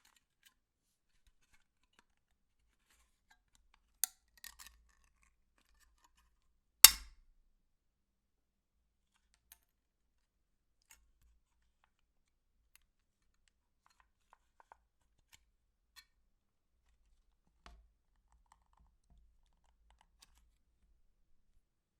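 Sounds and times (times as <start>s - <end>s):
faint small clicks and crackles: 17.0s - 20.7s.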